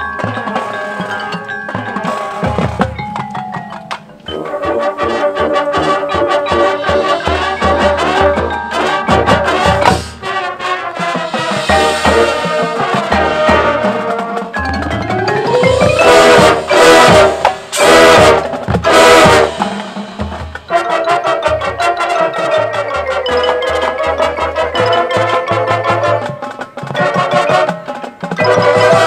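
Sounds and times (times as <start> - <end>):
marching band playing: 0.0 - 29.0
cymbal crashes: 11.2 - 13.6, 15.4 - 20.9.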